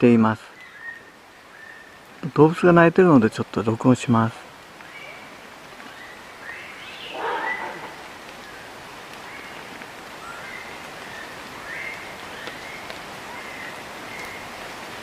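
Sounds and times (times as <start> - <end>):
steady background hiss: 0.0 - 15.0
animal chirping calls: 7.0 - 8.1.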